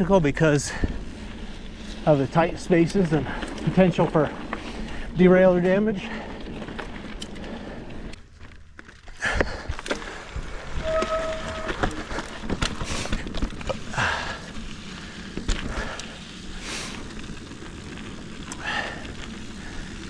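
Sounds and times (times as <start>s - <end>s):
bike tyre noise: 0.0s - 20.0s
bike rattling over rocks: 0.3s - 20.0s
short squeak: 10.8s - 12.1s.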